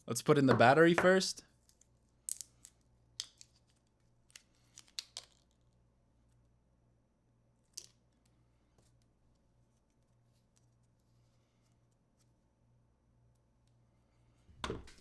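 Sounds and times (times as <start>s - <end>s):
clicks of small parts handled: 1.6s - 5.6s, 7.6s - 8.2s.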